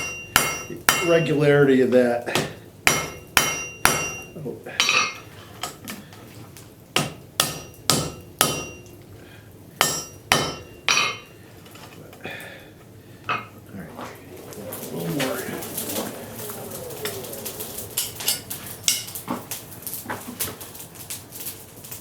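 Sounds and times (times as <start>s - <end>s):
hammer striking metal on anvil: 0.0s - 1.3s, 2.3s - 5.2s, 7.0s - 8.9s, 9.8s - 11.3s.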